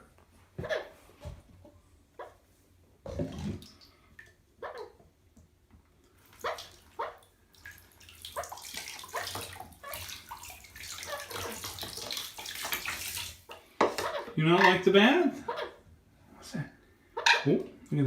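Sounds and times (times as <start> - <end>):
water splashing in a bathtub: 3.0 - 15.7.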